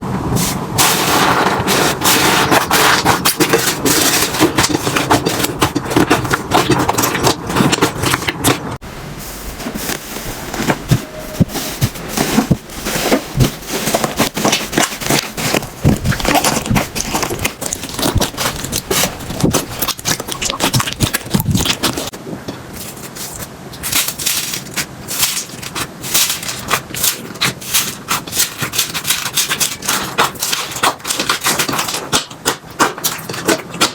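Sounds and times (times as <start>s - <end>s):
slime crackling and popping: 11.0s - 22.1s, 22.8s - 33.9s.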